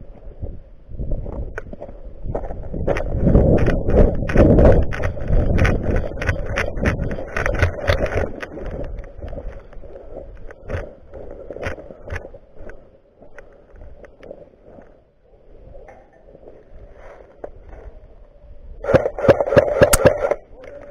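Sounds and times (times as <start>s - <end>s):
sharp clicks and scraping: 1.3s - 14.9s, 18.8s - 20.9s.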